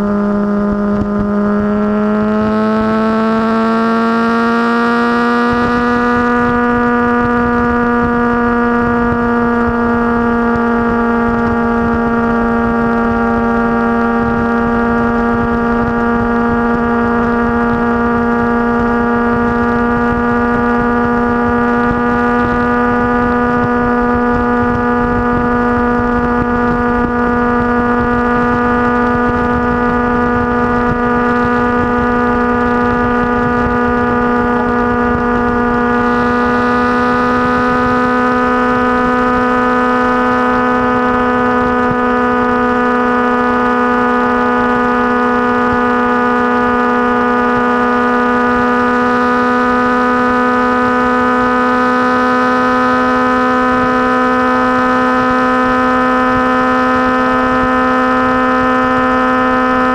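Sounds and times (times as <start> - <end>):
wind rumble: 0.0 - 3.4, 5.2 - 49.0
motorcycle engine cruising: 0.0 - 59.9.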